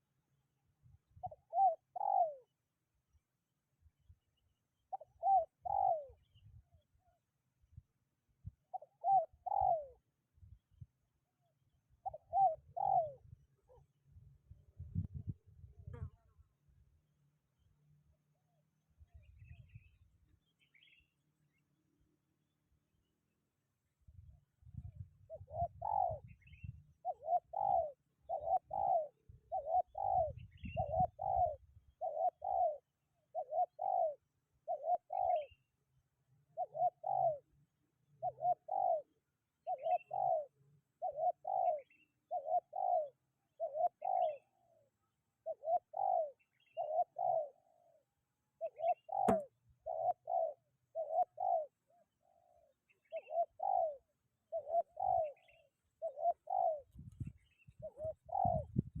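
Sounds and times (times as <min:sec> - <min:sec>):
dove cooing: 0:01.2 - 0:02.6, 0:04.9 - 0:06.3, 0:08.6 - 0:10.1, 0:12.0 - 0:13.9, 0:24.8 - 0:35.7, 0:36.5 - 0:59.0
wind rumble on microphone: 0:14.2 - 0:16.2, 0:24.1 - 0:26.9, 0:30.2 - 0:31.8, 0:56.9 - 0:59.0
sharp click: 0:49.2 - 0:49.5.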